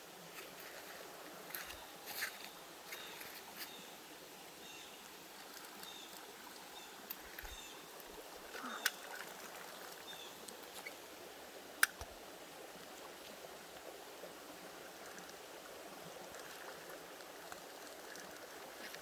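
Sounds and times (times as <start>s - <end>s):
creek water flowing: 0.0s - 19.0s
sharp click: 11.8s - 12.1s.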